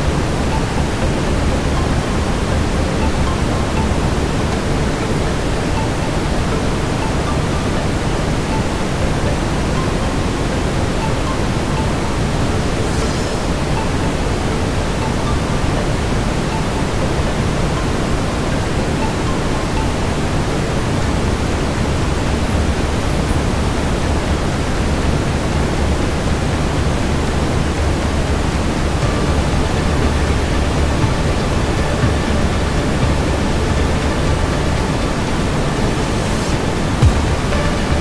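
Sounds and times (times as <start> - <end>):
brown noise: 0.0 - 38.0.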